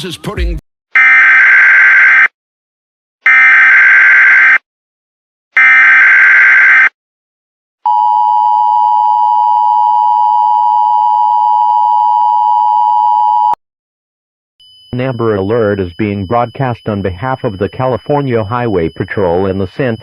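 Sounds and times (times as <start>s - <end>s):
two-tone alert signal: 14.6s - 20.0s.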